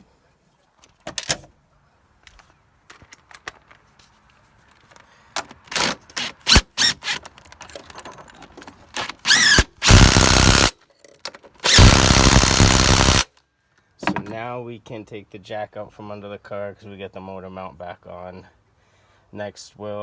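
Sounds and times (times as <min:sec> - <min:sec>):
impact wrench driving bolts: 0:05.6 - 0:07.6, 0:09.0 - 0:10.7, 0:11.6 - 0:13.3.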